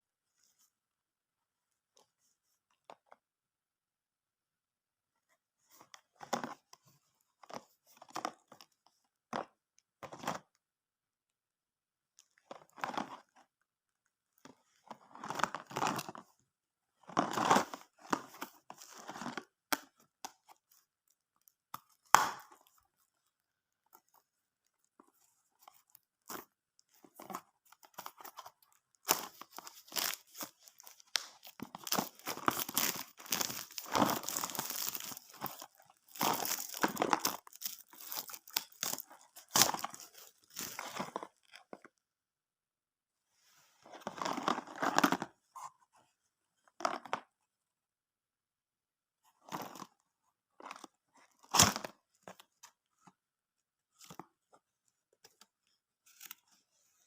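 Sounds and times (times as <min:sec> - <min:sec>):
packaging crinkling: 0:25.8 - 0:41.3
snack packaging tearing: 0:29.0 - 0:41.3.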